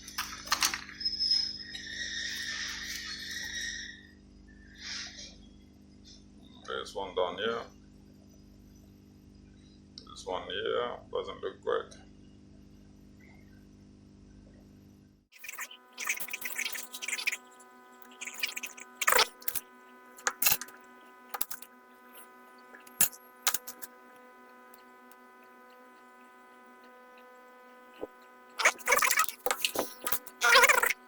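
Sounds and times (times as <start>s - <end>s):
electrical hum: 0.0s - 31.0s
hand tools scraping and ticking: 15.4s - 31.0s.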